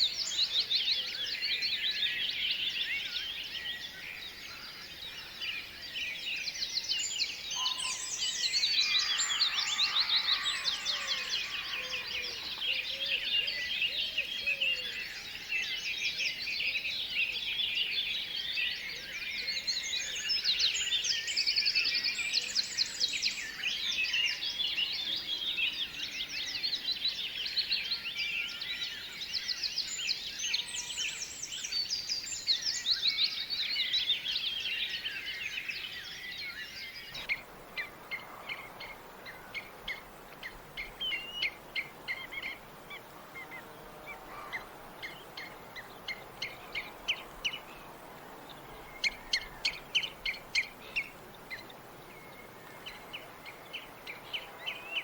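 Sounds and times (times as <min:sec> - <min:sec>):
small birds chirping: 0:29.0 - 0:55.0.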